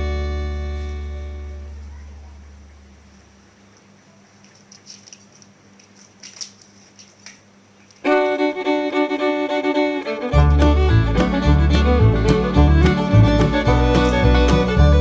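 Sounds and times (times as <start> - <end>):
heavy bass notes: 0.0 - 1.9, 10.2 - 15.0
string-band tune: 0.0 - 1.9, 8.0 - 15.0.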